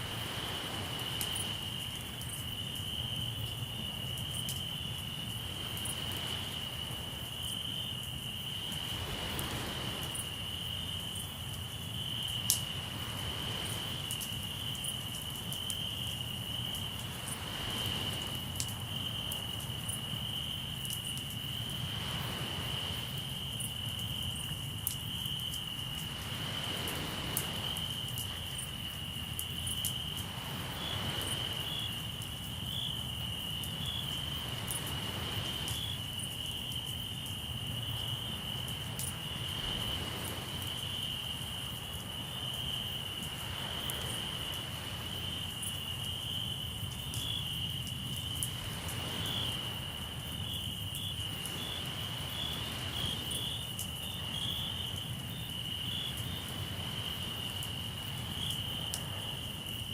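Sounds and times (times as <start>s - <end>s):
sea waves washing in: 0.0s - 2.2s, 5.2s - 7.4s, 8.6s - 11.4s, 12.4s - 14.3s, 16.9s - 19.5s, 21.6s - 23.4s, 26.0s - 32.0s, 33.7s - 36.2s, 37.8s - 45.7s, 48.0s - 54.8s
low rumble of surf: 0.0s - 4.2s, 4.8s - 15.3s, 16.0s - 25.0s, 25.6s - 59.9s
campfire crackling: 0.0s - 59.9s
crickets chirping: 0.0s - 59.9s.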